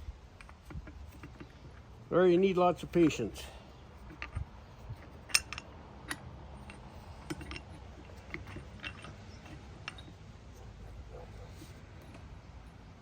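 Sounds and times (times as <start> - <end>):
metal tools clinking: 2.7 - 10.3.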